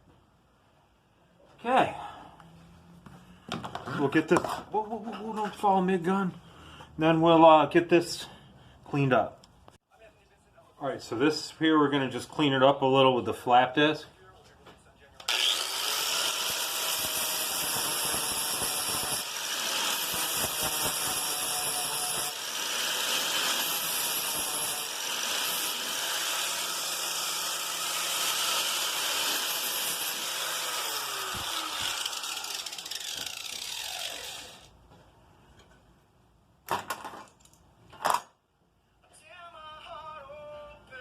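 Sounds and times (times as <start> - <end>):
angle grinder grinding metal: 15.3 - 34.7.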